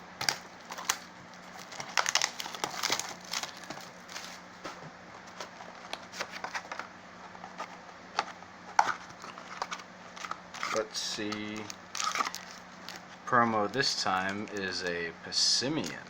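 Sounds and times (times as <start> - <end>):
packaging crinkling and tearing: 0.2 - 4.5, 5.2 - 15.0.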